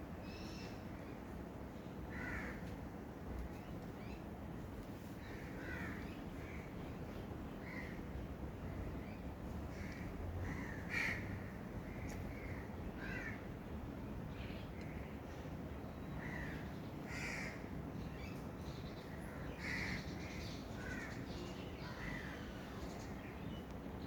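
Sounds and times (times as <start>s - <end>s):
steady background hiss: 0.0s - 24.0s
birds calling: 18.2s - 23.4s.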